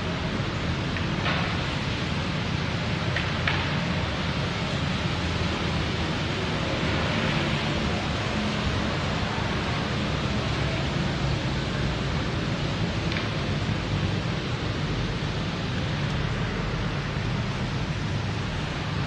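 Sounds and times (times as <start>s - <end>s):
heavy rain pouring: 0.0s - 19.0s.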